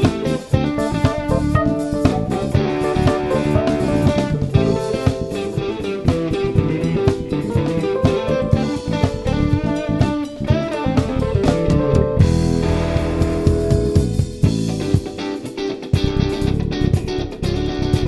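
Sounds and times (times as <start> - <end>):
bass guitar: 0.0 - 18.0
drum kit: 0.0 - 18.0
electric guitar: 0.0 - 18.0.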